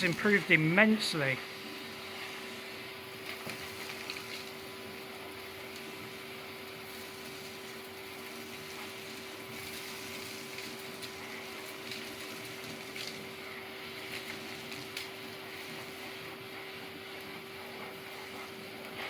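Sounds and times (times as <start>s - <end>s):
debris clicking in hose: 3.2s - 4.6s, 8.8s - 13.4s.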